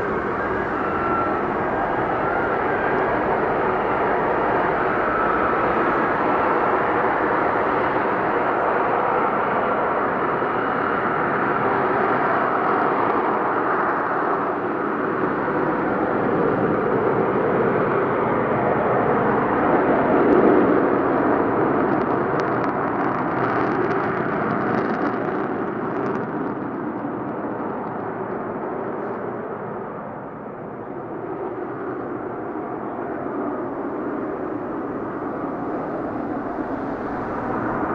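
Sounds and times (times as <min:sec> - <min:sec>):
jet hovering rushing noise: 0:00.0 - 0:10.4, 0:32.2 - 0:37.9.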